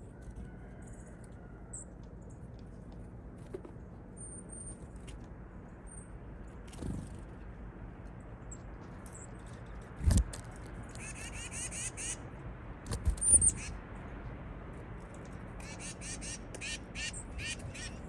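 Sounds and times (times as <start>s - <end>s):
outdoor background noise: 0.0s - 18.0s.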